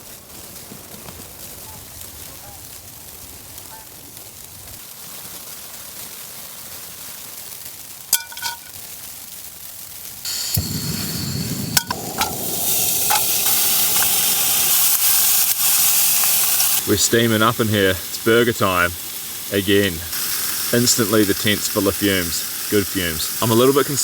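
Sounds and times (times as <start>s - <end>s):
patties sizzling in a pan: 2.1s - 24.0s
sharp clinks: 8.2s - 8.7s.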